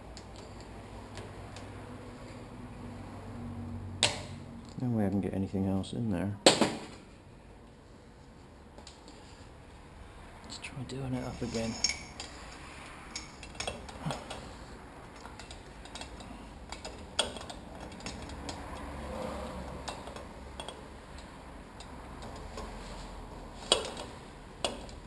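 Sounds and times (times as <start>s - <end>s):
metal clinks and taps of tools: 11.5s - 14.4s, 15.1s - 18.9s, 19.7s - 22.7s.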